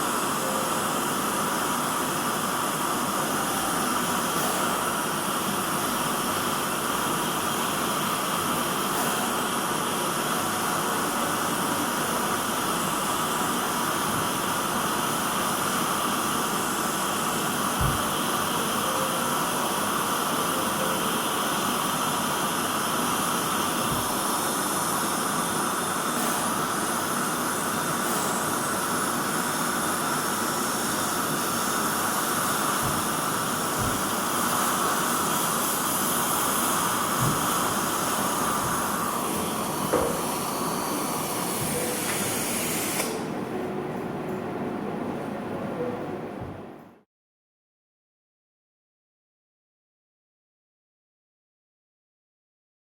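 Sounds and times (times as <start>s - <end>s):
dental suction hissing: 21.3s - 43.2s.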